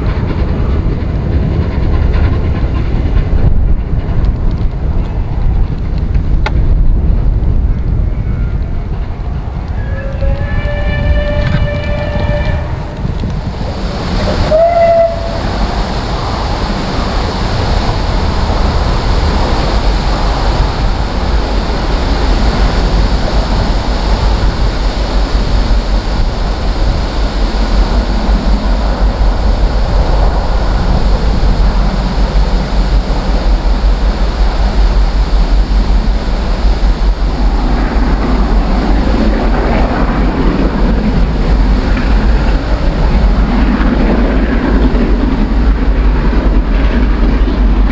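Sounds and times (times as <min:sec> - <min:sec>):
steam locomotive running: 0:00.0 - 0:47.9
wind buffeting microphone: 0:00.0 - 0:47.9
steam locomotive whistle: 0:09.8 - 0:12.9, 0:14.4 - 0:15.5.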